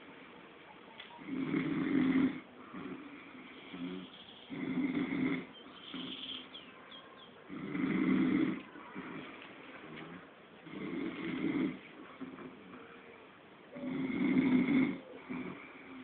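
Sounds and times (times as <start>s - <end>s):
man snoring: 1.2s - 6.2s, 7.5s - 9.2s, 10.6s - 12.8s, 13.8s - 16.0s
soft breathing: 8.5s - 10.4s, 15.0s - 16.0s.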